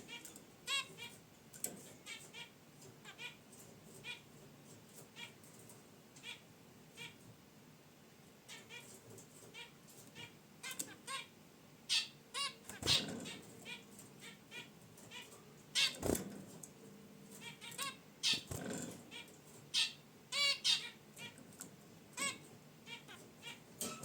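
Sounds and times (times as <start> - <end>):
finches honking calls: 0.0 - 1.2, 2.0 - 3.4, 6.2 - 7.2, 8.5 - 16.1, 17.3 - 21.4, 22.1 - 24.0.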